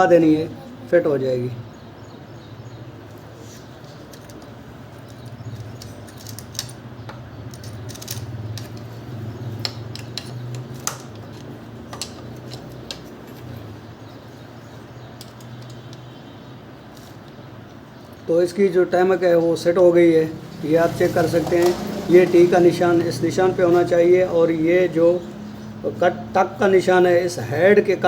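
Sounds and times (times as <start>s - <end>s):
light metallic clicks and clinks: 3.9s - 13.8s, 15.1s - 16.2s.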